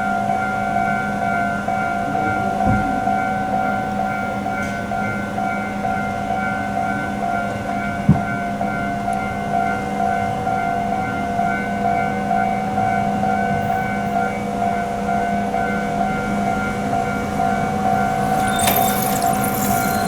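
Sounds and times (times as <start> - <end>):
level crossing alarm ringing: 15.0 - 20.0
train rushing: 15.6 - 20.0.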